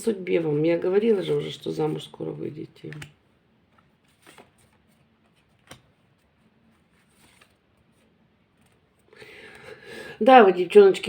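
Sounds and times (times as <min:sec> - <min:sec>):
cards rustling and tapping: 0:02.9 - 0:08.8.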